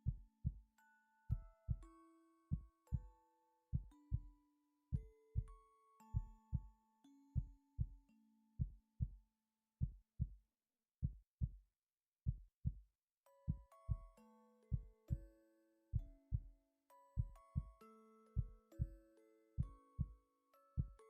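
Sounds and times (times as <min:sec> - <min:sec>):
heartbeat: 0:06.2 - 0:06.7, 0:12.3 - 0:12.8, 0:13.5 - 0:15.2, 0:17.2 - 0:17.7.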